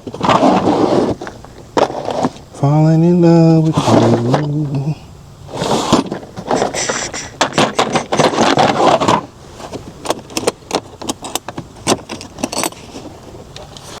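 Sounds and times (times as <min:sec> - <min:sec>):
small metal tools clinking: 0:10.0 - 0:12.9.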